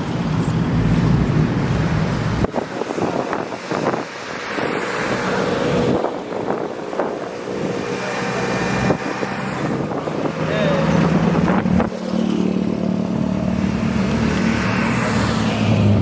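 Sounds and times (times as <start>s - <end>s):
heavy low engine rumble: 0.0s - 12.0s
car engines driving past: 0.0s - 16.0s
wind buffeting microphone: 0.0s - 16.0s.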